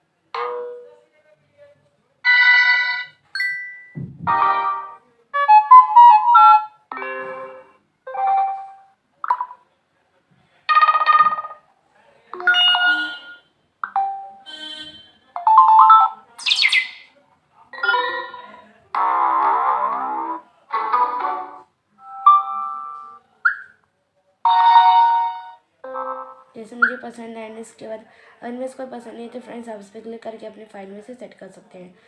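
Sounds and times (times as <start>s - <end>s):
phone notification chimes: 2.3s - 5.0s, 12.4s - 14.4s, 15.4s - 16.2s.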